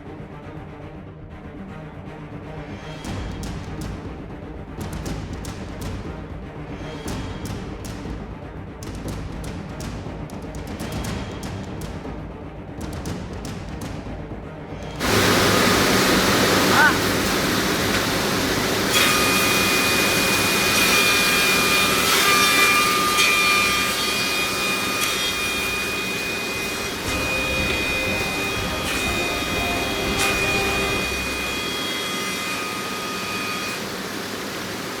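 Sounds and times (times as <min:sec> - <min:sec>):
thickness planer running: 0:15.0 - 0:35.0
high-pitched whine: 0:23.7 - 0:34.9.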